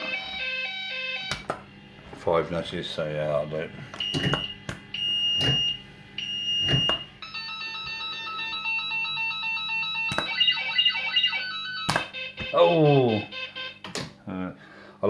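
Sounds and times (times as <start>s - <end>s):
fruit machine beeps: 3.9s - 13.9s
warbling electronic win tones: 4.0s - 13.7s.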